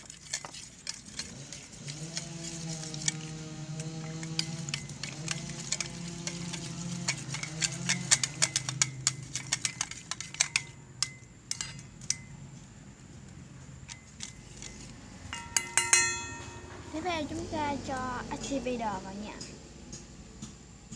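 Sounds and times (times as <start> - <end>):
utensil clicking against bowl: 0.3 - 12.2
ringing clink: 10.6 - 12.4, 15.3 - 16.8.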